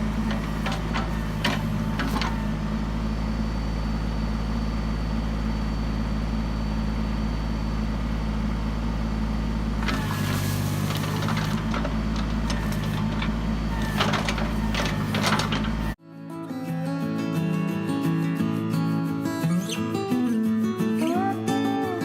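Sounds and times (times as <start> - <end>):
clattering: 0.0 - 2.5, 9.8 - 16.0
diesel tractor engine running: 0.0 - 16.0.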